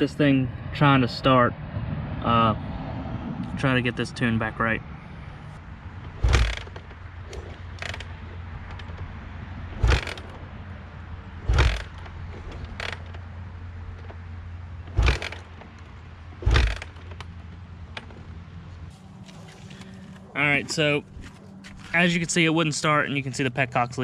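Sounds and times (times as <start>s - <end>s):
dirt bike engine turning over: 6.0s - 10.5s, 11.4s - 18.4s.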